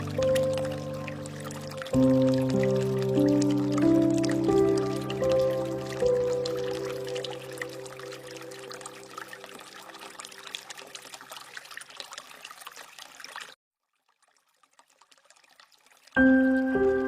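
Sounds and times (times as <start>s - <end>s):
rain dripping and trickling: 0.0s - 17.0s.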